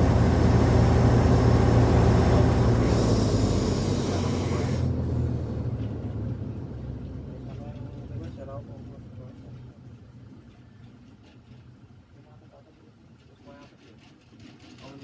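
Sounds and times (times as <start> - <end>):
diesel mining machine humming: 0.0 - 7.3.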